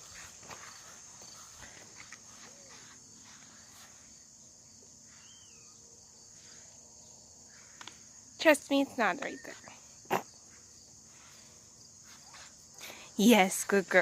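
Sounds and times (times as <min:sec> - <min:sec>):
crickets chirring: 0:00.0 - 0:14.0
faint chirp: 0:05.0 - 0:05.9.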